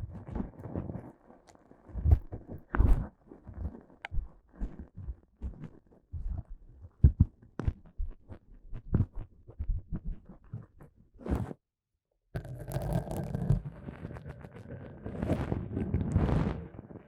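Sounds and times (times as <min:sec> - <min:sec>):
continuous muffled rubbing: 0:00.1 - 0:11.6.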